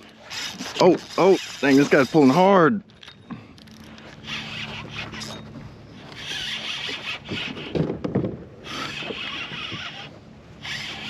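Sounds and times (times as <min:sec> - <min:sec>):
fishing reel drag buzzing: 0:00.0 - 0:07.8, 0:08.6 - 0:11.0
knocks against a kayak: 0:07.7 - 0:08.4.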